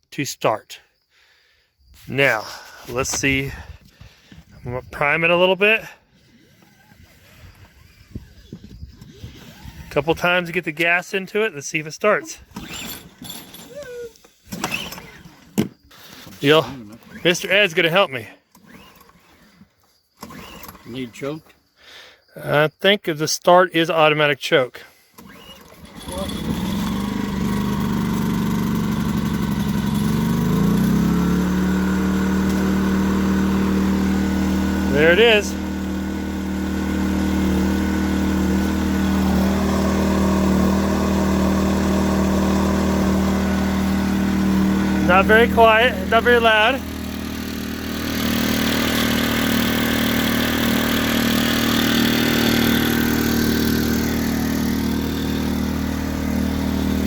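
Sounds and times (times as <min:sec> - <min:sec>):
generator engine running: 0:02.1 - 0:10.6, 0:25.2 - 0:57.0.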